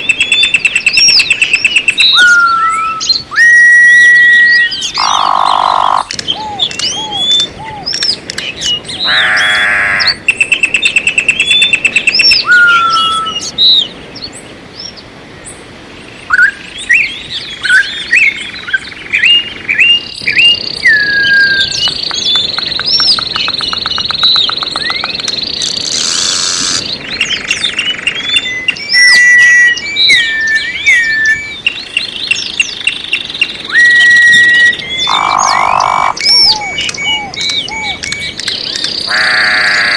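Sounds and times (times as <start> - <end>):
songbirds chirping and trilling: 0.0 - 39.9
harsh buzzy bird call: 4.5 - 7.8, 9.0 - 10.2, 35.0 - 38.0, 39.1 - 39.9.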